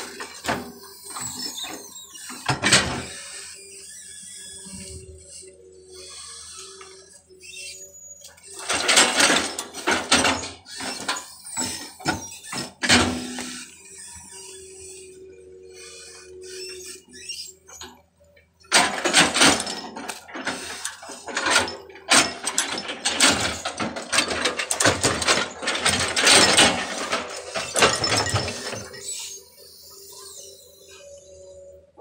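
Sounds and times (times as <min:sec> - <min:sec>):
mechanical clattering and ratcheting: 0:18.6 - 0:29.4.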